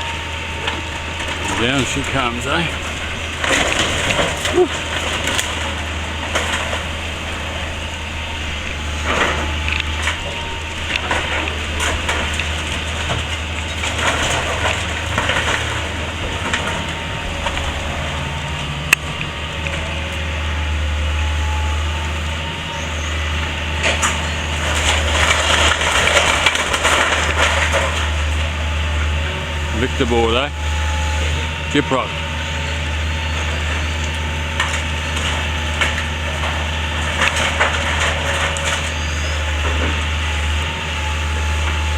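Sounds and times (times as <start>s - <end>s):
excavator diesel engine droning: 0.0s - 41.9s
timber cracking and splintering: 0.0s - 41.9s.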